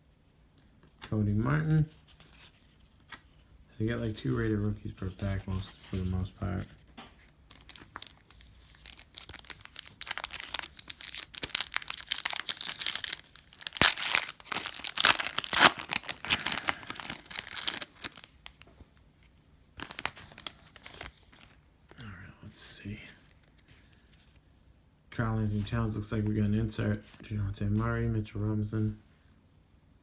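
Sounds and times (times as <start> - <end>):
foil wrapper tearing and crinkling: 7.5 - 18.6, 19.8 - 21.6.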